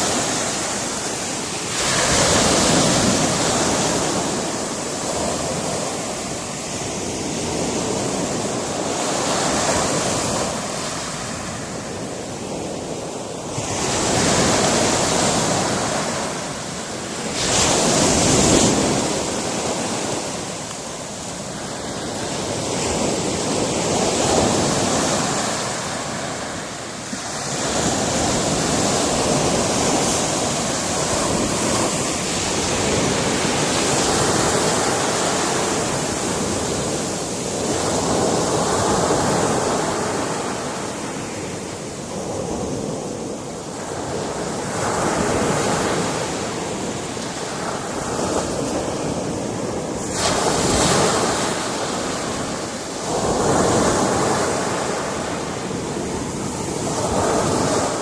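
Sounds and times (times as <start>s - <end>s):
surf breaking on rocks: 0.0s - 6.6s, 13.5s - 41.4s.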